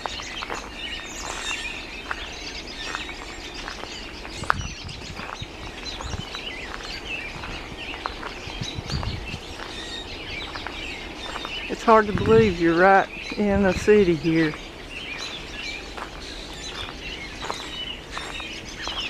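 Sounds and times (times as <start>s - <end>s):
birds chirping and singing: 0.0s - 19.0s
soft low thumps: 8.5s - 9.4s.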